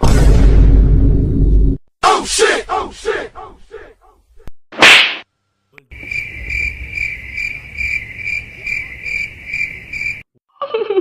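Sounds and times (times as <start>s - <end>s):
low rumble: 0.0s - 1.8s
crickets chirping: 5.9s - 10.3s.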